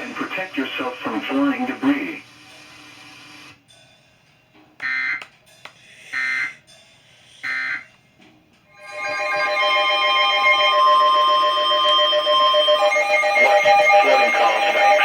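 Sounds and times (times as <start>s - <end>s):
music with steady tones: 3.6s - 15.0s
buzzy digital data tones: 12.4s - 15.0s.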